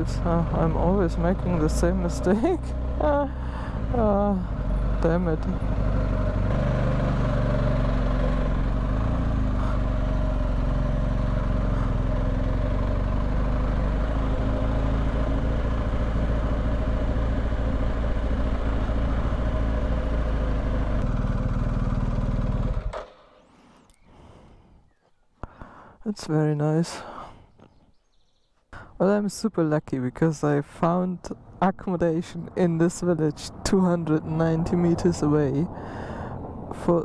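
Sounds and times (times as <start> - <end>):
motorcycle engine running: 0.0 - 23.4
road noise: 0.0 - 24.5, 28.8 - 37.0.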